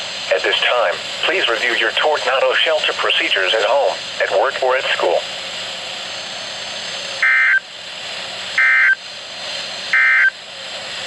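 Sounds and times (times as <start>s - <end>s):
radio static hiss: 0.2s - 5.3s
digital data tone bursts: 7.2s - 7.6s, 8.6s - 9.0s, 9.9s - 10.4s.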